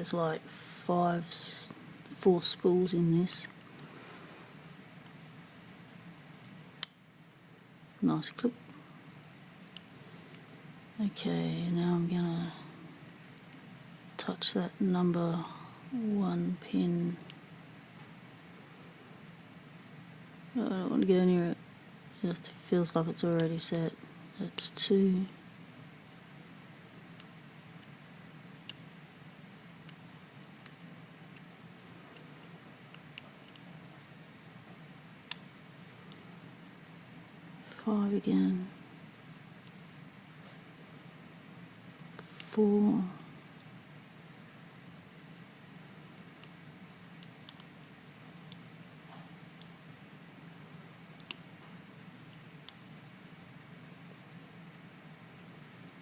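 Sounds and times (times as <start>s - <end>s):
lock pick metallic clicks: 32.1s - 33.6s, 51.2s - 51.5s.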